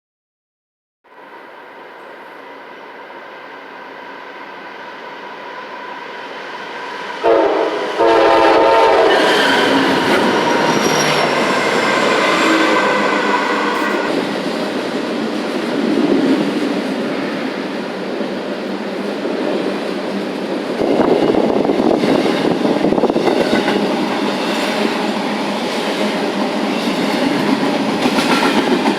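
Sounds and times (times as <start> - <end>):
freight train passing: 1.1 - 28.9
locomotive horn: 7.2 - 14.2.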